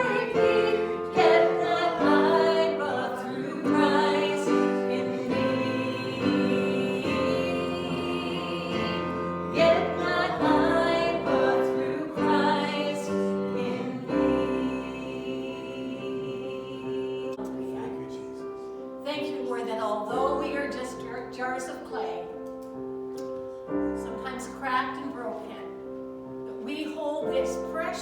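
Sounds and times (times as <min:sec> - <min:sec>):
sustained keyboard chords: 0:00.0 - 0:12.9.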